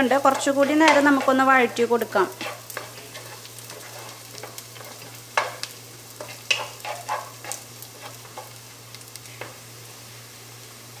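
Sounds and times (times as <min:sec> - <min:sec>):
onions sizzling: 0:00.0 - 0:11.0
spatula scraping a pan: 0:00.1 - 0:08.6.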